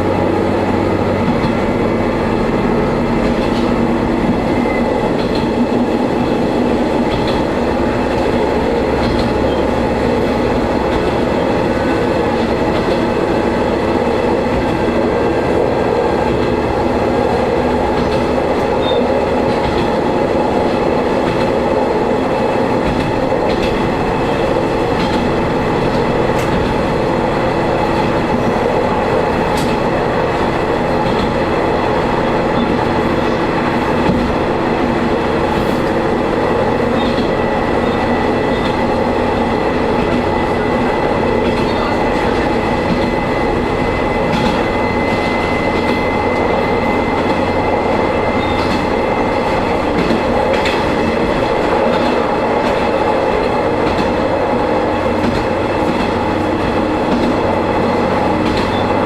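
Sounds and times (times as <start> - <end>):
diesel railcar engine drone: 0.0 - 59.0
wheels clicking over rail joints: 7.0 - 13.2, 17.8 - 31.6, 48.4 - 54.5.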